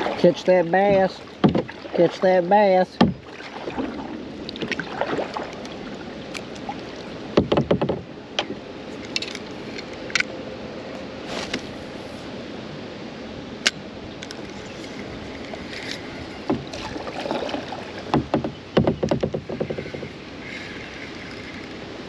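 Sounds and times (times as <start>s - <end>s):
paddle splashing and dripping: 0.0s - 9.1s, 14.2s - 22.0s
rushing river water: 0.0s - 22.0s
sharp clicks and knocks: 1.4s - 1.8s, 7.4s - 10.3s, 18.1s - 20.1s.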